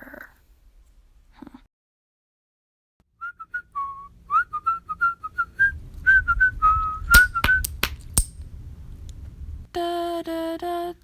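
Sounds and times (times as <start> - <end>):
person whistling a tune: 3.2 - 7.7
sharp clicks: 7.2 - 8.4.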